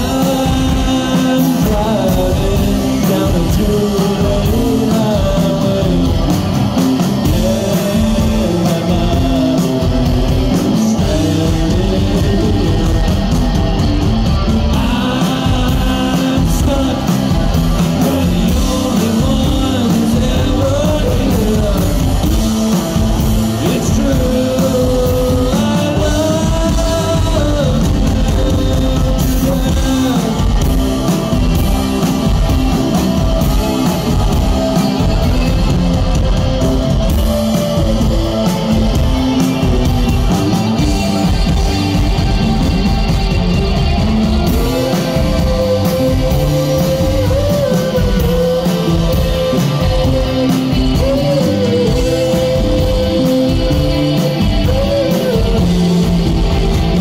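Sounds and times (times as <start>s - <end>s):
bass guitar: 0.0s - 57.0s
drum kit: 0.0s - 57.0s
electric guitar: 0.0s - 57.0s
lead vocals: 0.0s - 57.0s.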